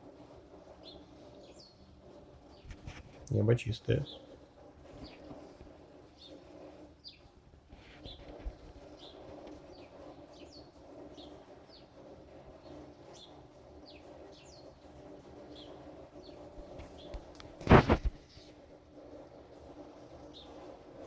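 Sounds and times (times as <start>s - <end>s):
small bird chirping: 0.8s - 2.8s, 7.0s - 7.3s, 8.9s - 12.0s, 12.6s - 14.8s.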